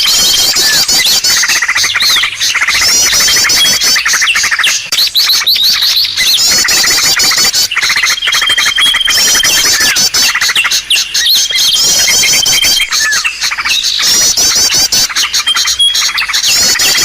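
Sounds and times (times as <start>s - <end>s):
high chirp trills: 0.0s - 17.0s
songbirds chattering: 0.0s - 17.0s
ticking bird calls: 0.0s - 17.0s.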